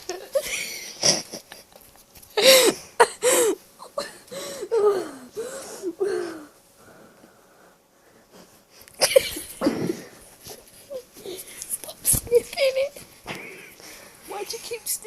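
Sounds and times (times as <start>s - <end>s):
person wheezing laughter: 0.2s - 1.6s, 9.0s - 10.2s.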